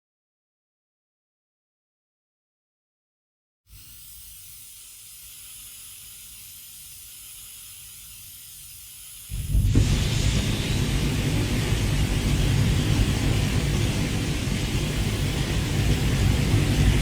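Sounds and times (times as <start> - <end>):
pressurised gas hissing: 3.7 - 17.0
deep blast of fire: 9.3 - 17.0.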